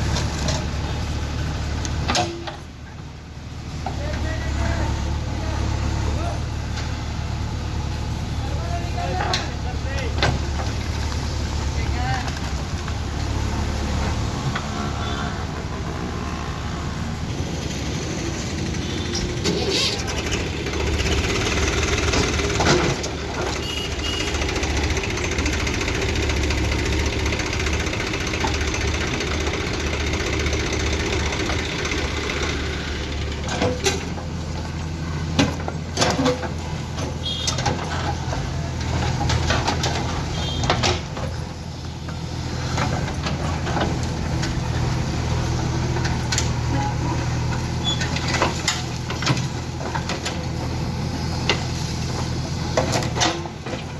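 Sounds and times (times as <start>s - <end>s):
diesel engine running: 0.0s - 53.9s.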